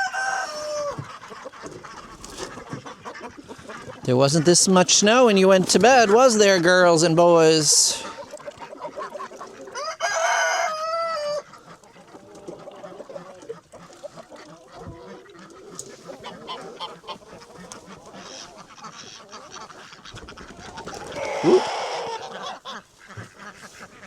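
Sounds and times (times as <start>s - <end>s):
rooster crowing: 0.0s - 1.0s, 9.8s - 11.4s, 21.2s - 22.3s
chickens clucking: 0.0s - 24.0s.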